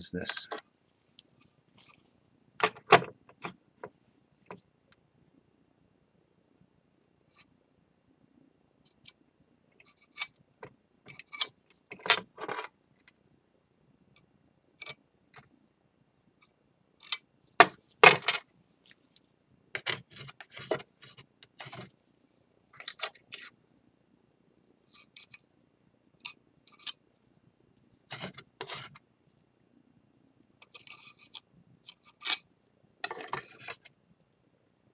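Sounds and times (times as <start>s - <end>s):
tools clicking and scraping: 19.1s - 22.0s, 28.1s - 29.0s, 30.6s - 34.0s.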